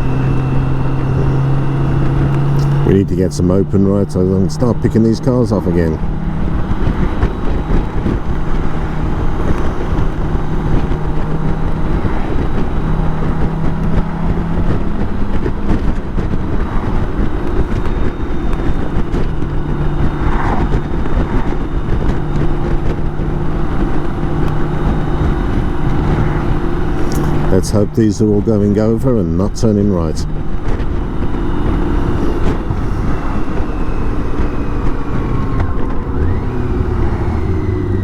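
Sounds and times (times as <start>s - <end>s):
motorcycle engine running: 0.0s - 38.0s
wind and road noise: 0.0s - 38.0s.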